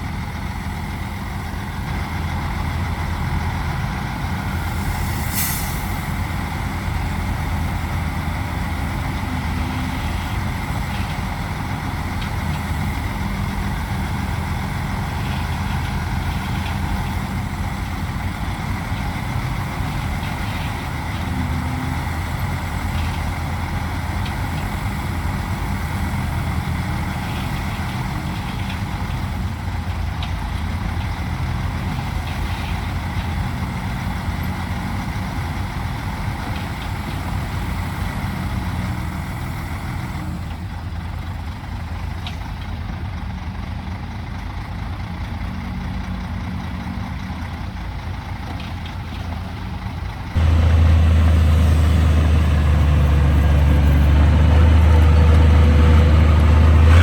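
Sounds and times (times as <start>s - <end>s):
heavy diesel engines running: 0.0s - 57.0s
air hiss: 4.7s - 6.4s.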